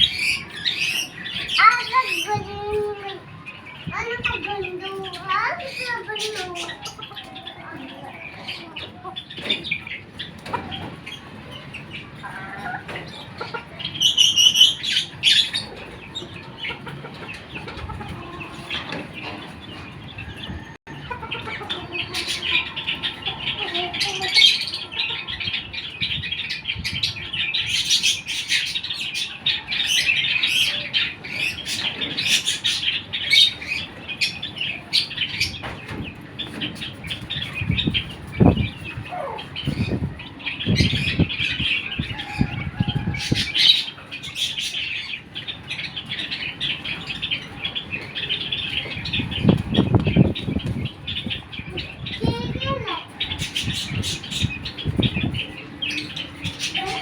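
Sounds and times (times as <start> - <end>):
chickens clucking: 0.0 - 57.0
high-pitched bird chirping: 0.0 - 57.0.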